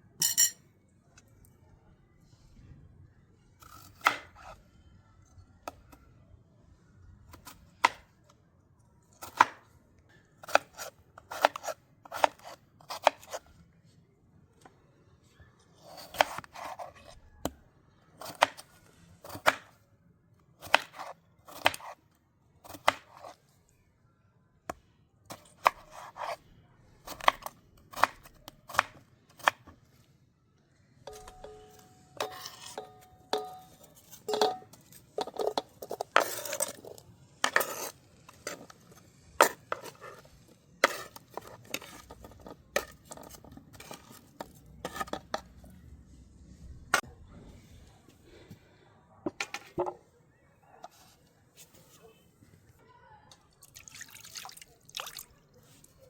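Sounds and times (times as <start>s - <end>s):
knife chopping potatoes: 3.6s - 4.6s, 7.4s - 8.1s, 9.2s - 9.6s, 10.4s - 13.4s, 15.8s - 17.6s, 18.2s - 19.8s, 20.6s - 22.0s, 22.6s - 23.4s, 25.3s - 26.4s, 27.0s - 29.8s, 31.1s - 45.6s.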